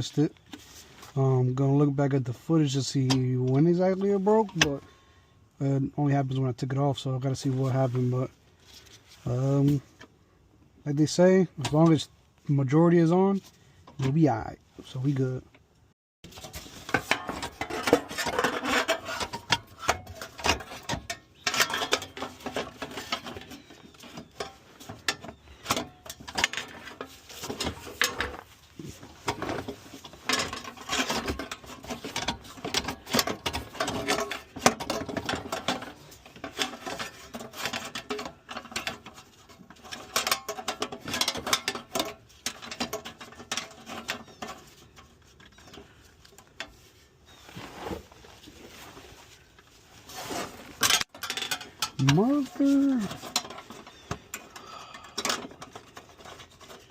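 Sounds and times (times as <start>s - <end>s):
hand tools clicking and rattling: 16.3s - 46.8s, 50.8s - 56.9s.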